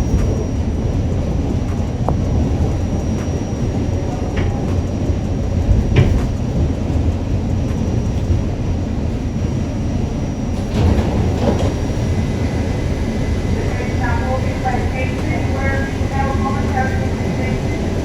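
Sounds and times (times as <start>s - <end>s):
train wheels rumbling on track: 0.0s - 18.0s.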